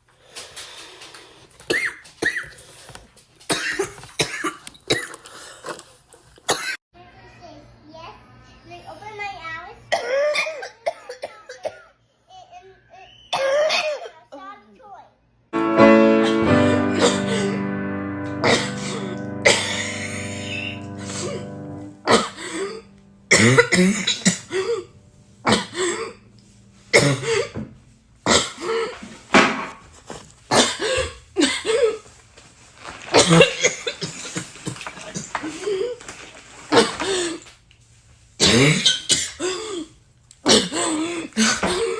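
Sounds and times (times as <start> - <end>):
person coughing: 1.7 - 2.5, 3.5 - 5.2, 16.2 - 17.6, 18.4 - 26.2, 26.9 - 27.7, 28.3 - 29.0, 30.5 - 32.0, 33.2 - 36.0, 38.4 - 41.9
held musical chord: 15.6 - 28.2.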